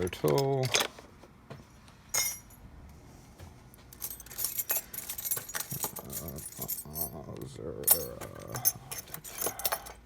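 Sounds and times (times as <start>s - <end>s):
metal keys jingling and clinking: 2.1s - 2.6s, 3.9s - 10.0s.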